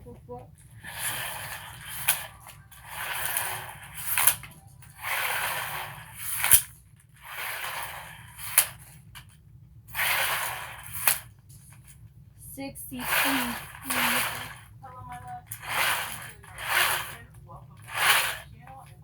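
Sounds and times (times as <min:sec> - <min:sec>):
tape measure blade whirring: 0:00.6 - 0:12.1, 0:12.8 - 0:19.0
tape measure snapping shut: 0:06.2 - 0:06.7.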